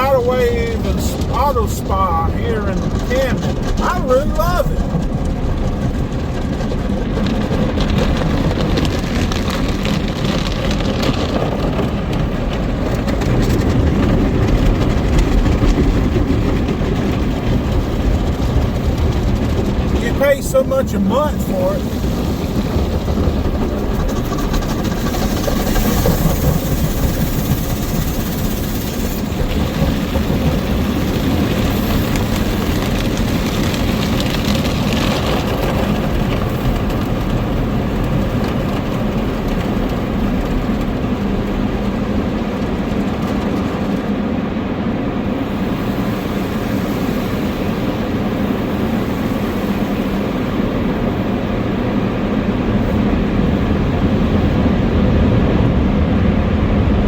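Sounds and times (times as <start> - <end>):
car wash machinery rumble: 0.0 - 57.0
hissing water spray: 19.9 - 38.1, 45.3 - 54.6.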